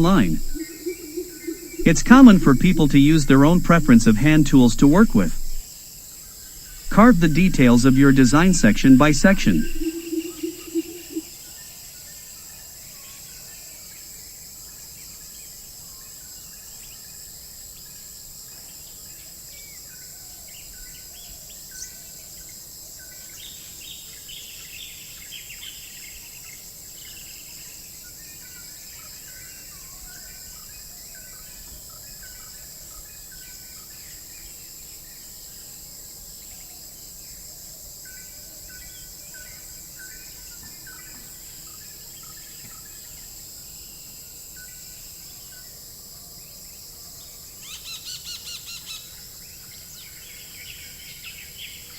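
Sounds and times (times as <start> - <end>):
birds chirping: 0.0 - 5.6, 7.4 - 11.2
insect chorus: 0.3 - 51.9.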